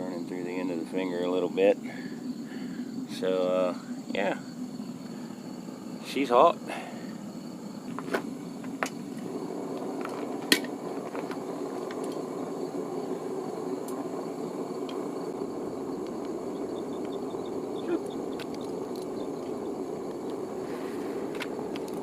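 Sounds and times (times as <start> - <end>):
sharp clicks: 18.0 - 20.4.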